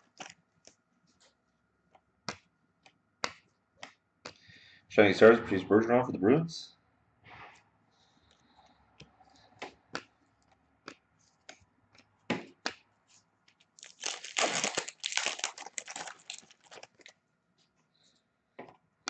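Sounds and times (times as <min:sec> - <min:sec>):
cards being handled: 0:09.0 - 0:17.2
foil pack torn and crinkled: 0:13.8 - 0:17.2.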